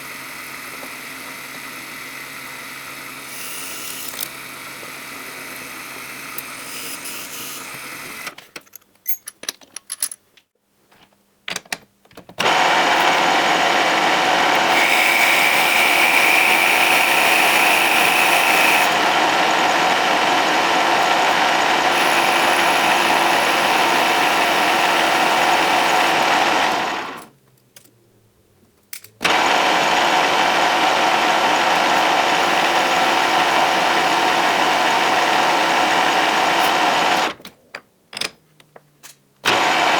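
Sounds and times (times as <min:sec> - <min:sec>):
power tool motor running: 0:00.1 - 0:08.3, 0:12.4 - 0:27.3, 0:29.2 - 0:37.4, 0:39.5 - 0:39.9.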